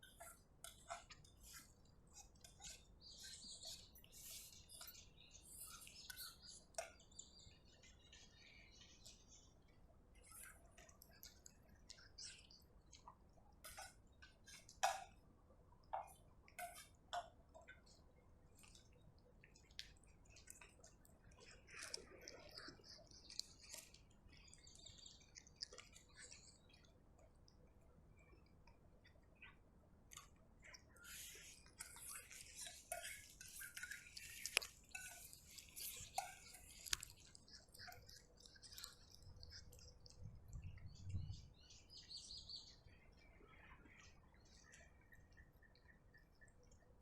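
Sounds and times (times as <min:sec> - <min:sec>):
cat chewing: 0:18.6 - 0:27.5, 0:31.0 - 0:40.6.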